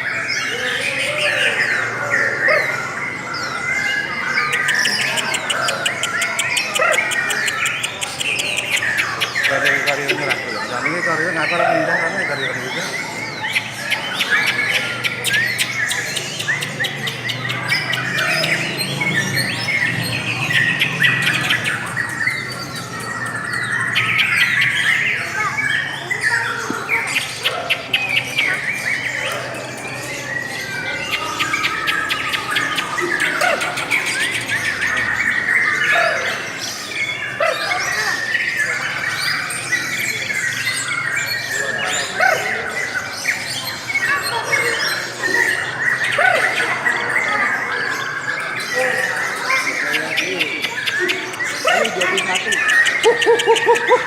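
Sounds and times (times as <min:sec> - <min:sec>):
bird squawks: 0:00.0 - 0:39.6
lovebirds chirping and trilling: 0:00.0 - 0:54.0.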